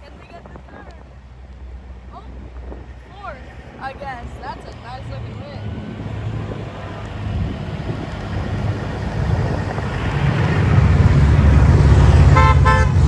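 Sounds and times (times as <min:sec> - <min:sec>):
truck diesel engine rumbling: 0:00.0 - 0:13.0.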